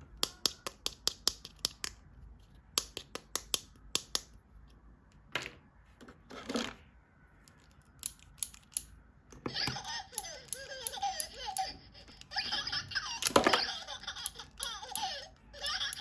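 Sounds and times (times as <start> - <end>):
plastic toys clicking: 0.0 - 2.1, 2.7 - 4.4, 7.4 - 16.0.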